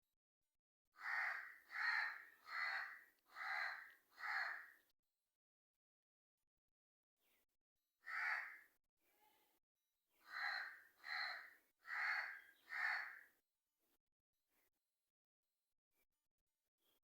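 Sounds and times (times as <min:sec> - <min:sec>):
crow cawing: 0:01.0 - 0:04.8, 0:08.0 - 0:08.7, 0:10.2 - 0:13.3.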